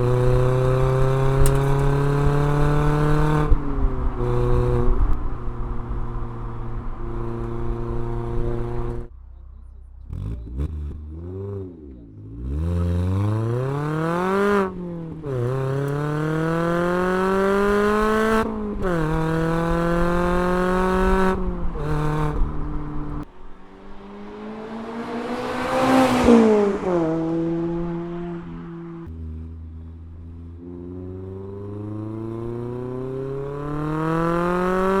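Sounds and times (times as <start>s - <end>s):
car engine revving hard: 0.0s - 9.1s, 10.1s - 29.5s, 30.4s - 35.0s
car passing by: 23.3s - 29.1s.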